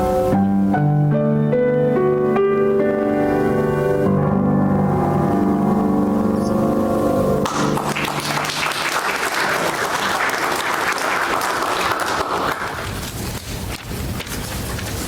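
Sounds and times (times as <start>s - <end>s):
crowd applauding: 7.4s - 13.4s.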